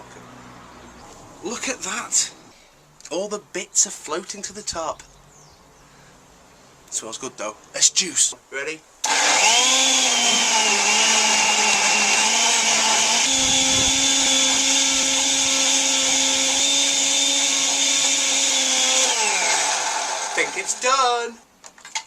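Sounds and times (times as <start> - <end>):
blender motor whining: 9.0 - 21.0.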